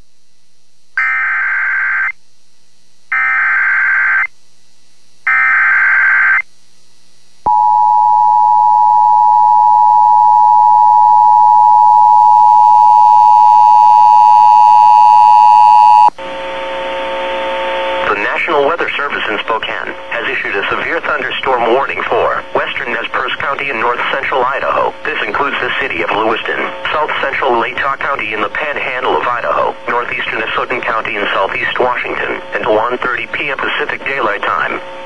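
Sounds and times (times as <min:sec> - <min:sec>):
hissy broadcast audio: 0:00.0 - 0:35.0
two-tone attention signal: 0:07.5 - 0:16.1.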